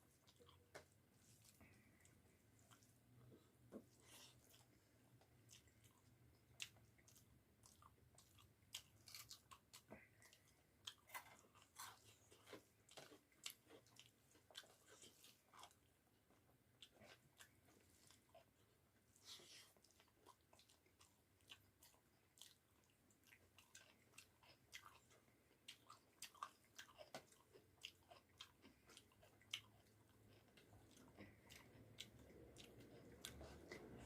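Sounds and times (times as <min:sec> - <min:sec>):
close-up chewing: 0:00.0 - 0:34.0.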